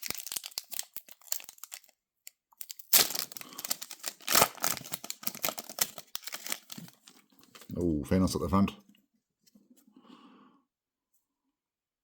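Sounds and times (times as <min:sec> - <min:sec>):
wrapper tearing and crinkling: 0:00.0 - 0:07.7.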